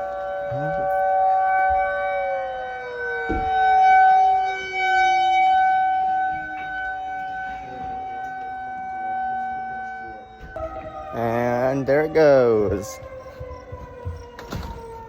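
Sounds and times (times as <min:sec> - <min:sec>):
lower siren tone sliding down: 0:00.0 - 0:15.0
tornado warning siren wail: 0:00.0 - 0:15.0
dull thump: 0:03.2 - 0:03.7.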